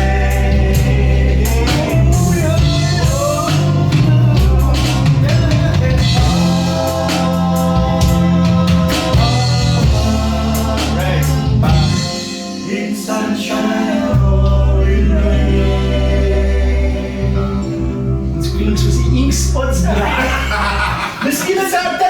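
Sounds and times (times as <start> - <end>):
bass guitar: 0.0 - 12.6, 14.1 - 21.2
drum kit: 0.0 - 12.7
keyboards: 0.0 - 22.0
voices singing: 0.0 - 22.0.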